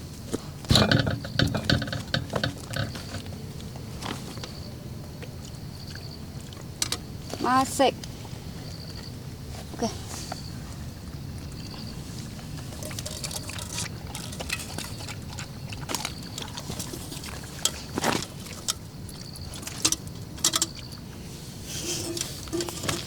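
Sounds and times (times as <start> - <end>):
sharp knocks and clicks: 0.7 - 3.3.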